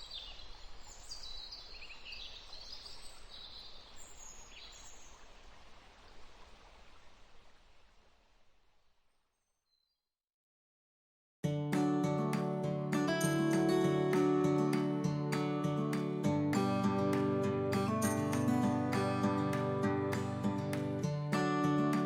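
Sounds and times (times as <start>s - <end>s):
birds chirping: 0.0s - 5.4s
outdoor background hiss: 0.0s - 9.4s, 11.8s - 22.0s.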